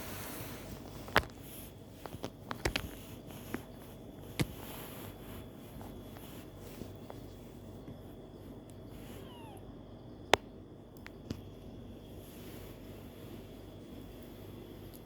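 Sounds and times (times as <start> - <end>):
kittens scuffling: 0.0 - 9.6
quiet hiss: 0.0 - 15.0.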